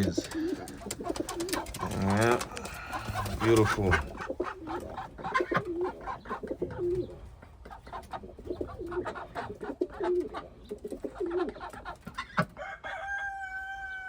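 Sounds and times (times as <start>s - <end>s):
light clicks and shuffling: 0.0s - 4.9s
pigeons cooing: 0.0s - 12.5s
rooster crowing: 12.6s - 14.0s.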